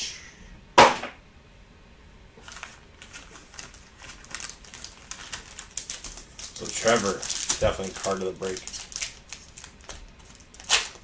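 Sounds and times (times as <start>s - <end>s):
cards and packaging crinkling: 2.4s - 11.0s.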